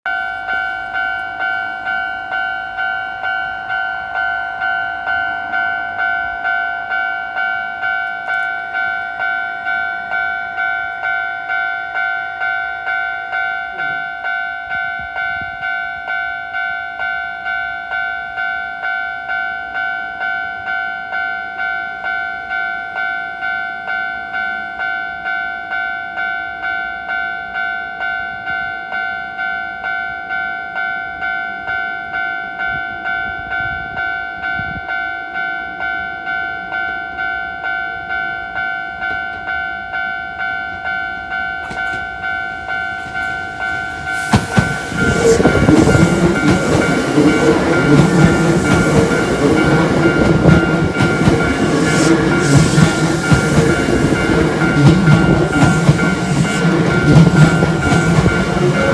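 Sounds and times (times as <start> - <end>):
level crossing warning bell: 0.1 - 58.9
train rumble: 41.2 - 58.9.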